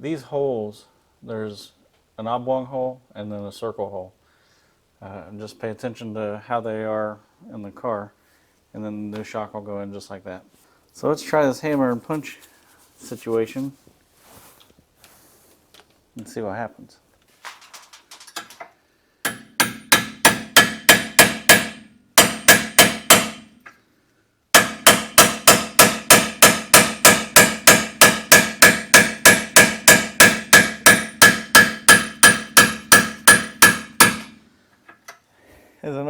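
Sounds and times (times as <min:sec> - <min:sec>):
hammer striking steel punch: 0:19.2 - 0:23.6, 0:24.6 - 0:34.4.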